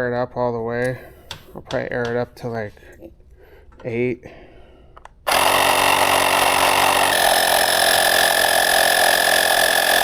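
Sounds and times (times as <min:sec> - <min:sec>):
electric tire inflator buzzing: 0:05.3 - 0:10.0.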